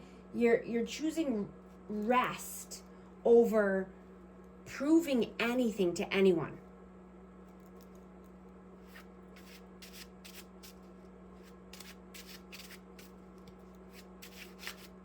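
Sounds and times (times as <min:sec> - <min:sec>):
low electrical hum: 0:00.0 - 0:15.0
cards being shuffled: 0:08.8 - 0:15.0.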